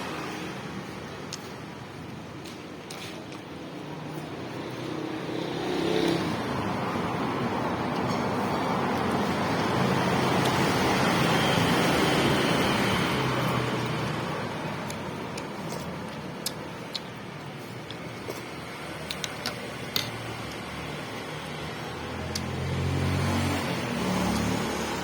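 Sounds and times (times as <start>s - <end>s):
road vehicle passing by: 0.0s - 25.0s.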